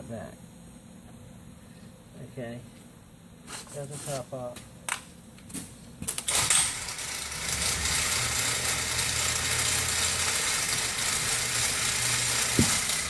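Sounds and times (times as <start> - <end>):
power tool motor rattling: 6.2 - 13.0.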